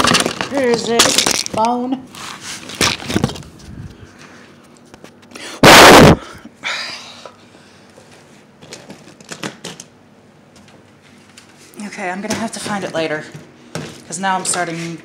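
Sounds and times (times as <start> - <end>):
loud burst of noise: 5.6 - 6.4.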